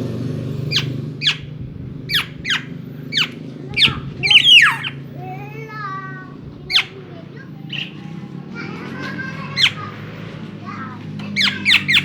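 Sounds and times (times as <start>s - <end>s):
steady low hum: 0.0s - 12.0s
bird giving sharp call notes: 0.7s - 6.0s.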